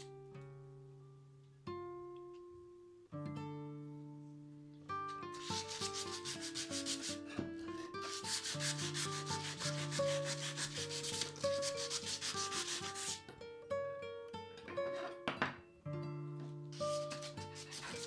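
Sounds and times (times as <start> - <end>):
acoustic guitar music: 0.0 - 18.0
sanding strokes: 5.4 - 7.4, 8.0 - 13.2, 16.8 - 18.0.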